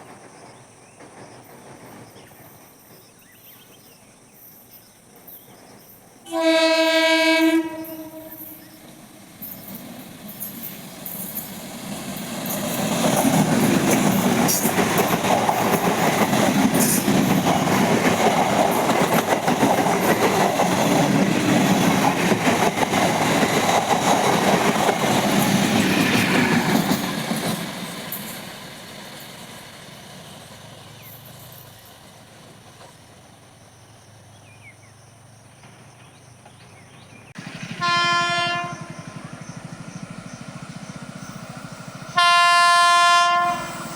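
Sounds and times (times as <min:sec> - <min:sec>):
train rumble and wheels clattering: 0:00.0 - 0:43.9
train horn blast: 0:06.3 - 0:08.8, 0:37.6 - 0:39.6, 0:42.1 - 0:43.9.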